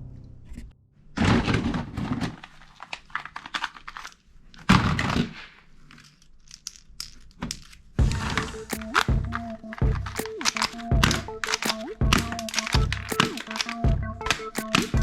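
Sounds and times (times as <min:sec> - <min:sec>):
plastic rattle bursts: 0:01.2 - 0:15.0
plastic toy guns clicking: 0:06.1 - 0:07.9, 0:08.7 - 0:15.0.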